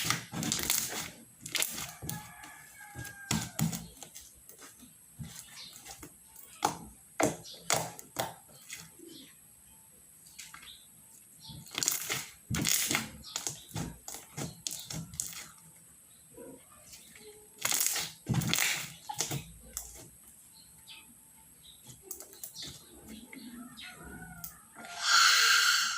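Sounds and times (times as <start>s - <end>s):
hands squishing slime: 0.0s - 8.8s, 11.6s - 15.5s.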